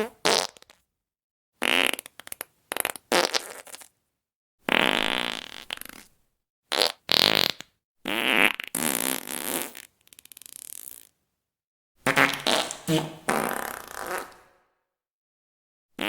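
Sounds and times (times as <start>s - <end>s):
fart sounds: 0.0s - 0.8s, 1.6s - 3.9s, 4.7s - 6.1s, 6.7s - 11.1s, 12.1s - 14.6s.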